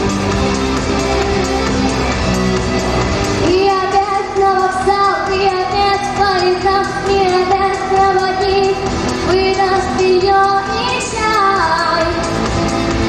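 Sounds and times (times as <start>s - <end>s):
song accompaniment: 0.0s - 13.0s.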